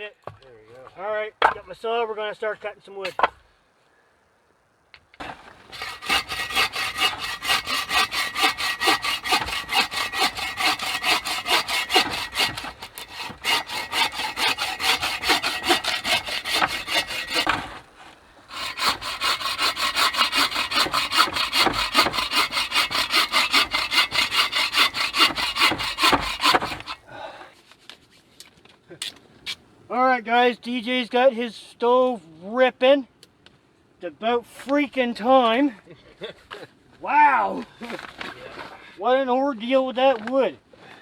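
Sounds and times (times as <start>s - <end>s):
hand saw cutting log: 5.2s - 27.1s.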